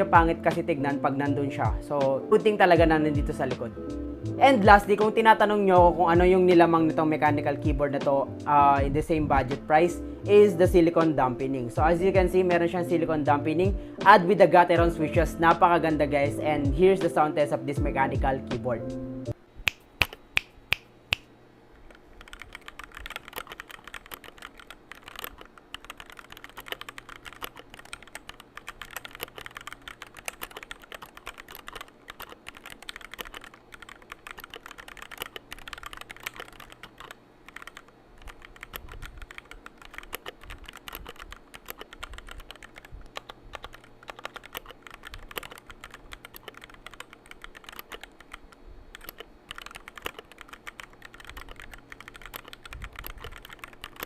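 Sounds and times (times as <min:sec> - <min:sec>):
typing on mechanical keyboard: 0:21.9 - 0:54.0.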